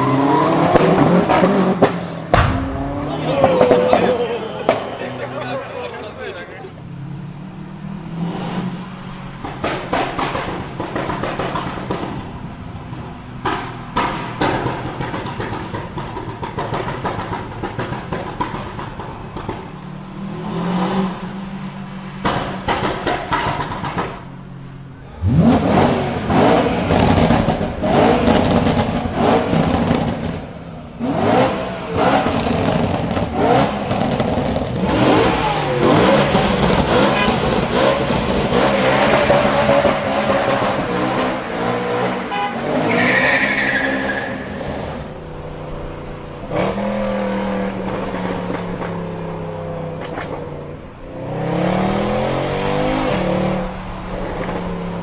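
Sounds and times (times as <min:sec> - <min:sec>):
car engine revving: 0:00.0 - 0:55.0
exhaust pops and crackles: 0:00.6 - 0:06.2, 0:09.2 - 0:20.2, 0:22.0 - 0:41.4, 0:46.5 - 0:50.9.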